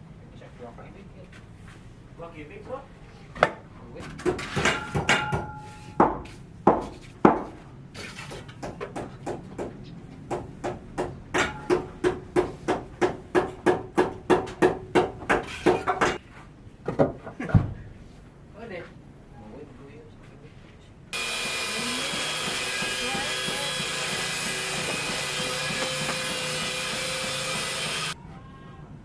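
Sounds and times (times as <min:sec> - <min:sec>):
hammer strikes with ringing: 0:04.6 - 0:06.2, 0:11.4 - 0:15.2.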